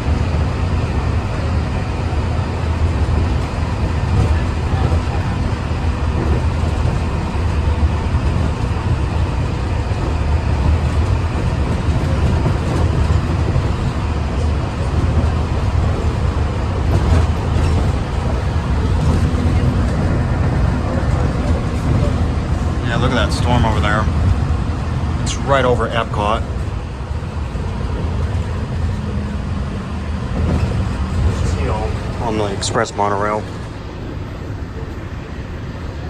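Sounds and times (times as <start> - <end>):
monorail car rumble: 0.0 - 36.0.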